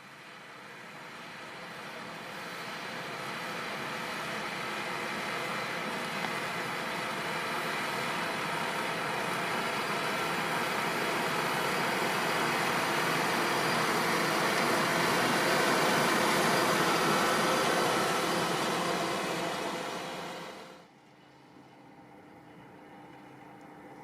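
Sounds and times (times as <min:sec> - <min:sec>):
tractor diesel engine under load: 0:06.7 - 0:20.8.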